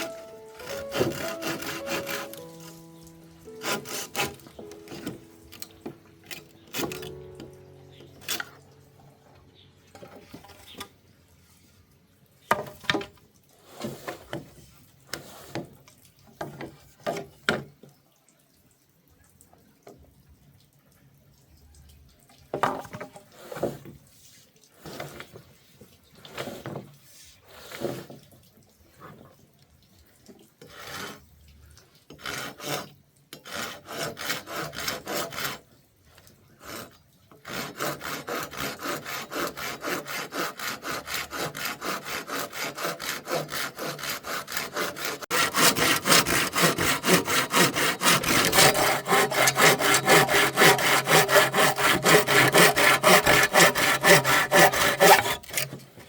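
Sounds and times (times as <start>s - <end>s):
hand saw cutting wood: 0.0s - 8.6s, 13.7s - 15.8s, 24.8s - 25.5s, 27.5s - 28.2s, 30.6s - 31.3s, 32.1s - 35.7s, 36.5s - 56.0s.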